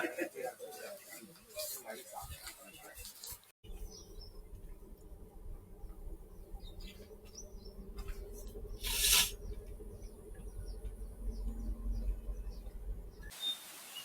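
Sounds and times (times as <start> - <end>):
steady low hum: 3.7 - 13.3
loud rustling hiss: 8.8 - 9.4.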